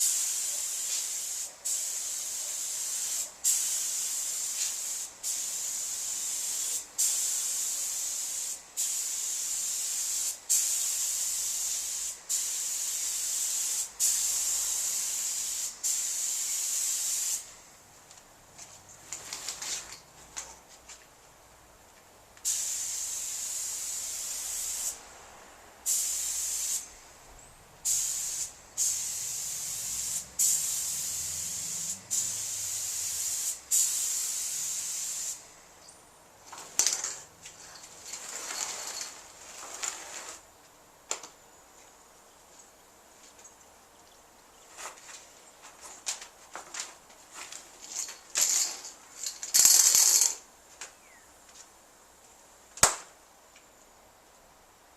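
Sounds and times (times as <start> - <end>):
paint spray gun hissing: 0.0 - 17.6, 22.4 - 25.0, 25.9 - 26.9, 27.8 - 35.4.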